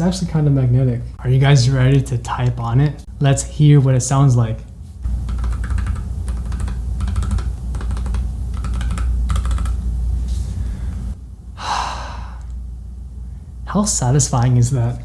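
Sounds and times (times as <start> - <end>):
mechanical keyboard keys clicking: 5.3 - 9.8.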